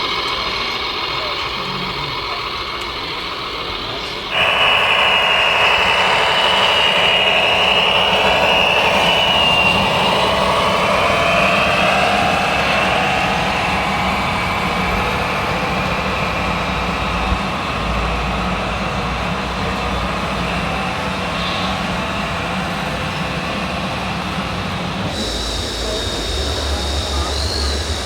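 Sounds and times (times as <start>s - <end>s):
high motor whine: 0.0s - 28.0s
model machines engine hum: 0.0s - 28.0s.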